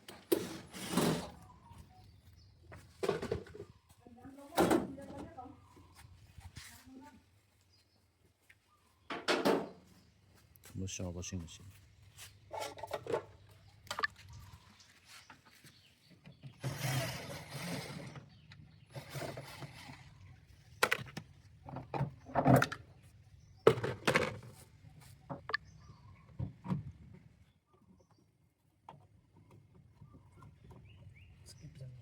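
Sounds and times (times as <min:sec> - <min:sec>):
scraping or rustling: 0:00.1 - 0:01.5, 0:18.9 - 0:20.2
knocks and clatter of parts: 0:20.8 - 0:23.0, 0:23.6 - 0:24.7.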